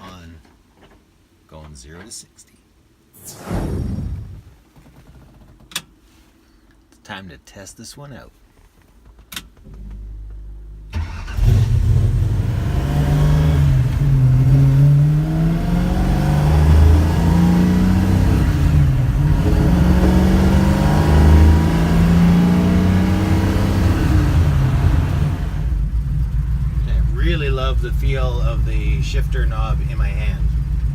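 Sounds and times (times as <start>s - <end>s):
car engine accelerating: 9.7s - 30.9s.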